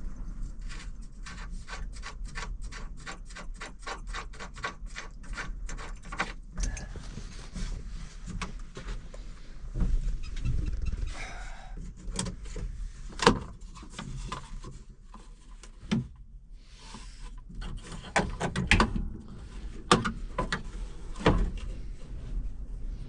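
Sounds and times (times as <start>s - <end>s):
steady low rumble: 0.0s - 2.7s, 18.7s - 23.0s.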